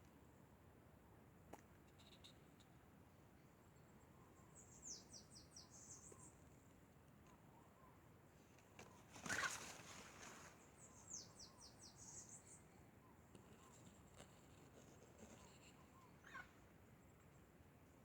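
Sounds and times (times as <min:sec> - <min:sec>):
faint birdsong chirps: 0:03.4 - 0:18.0.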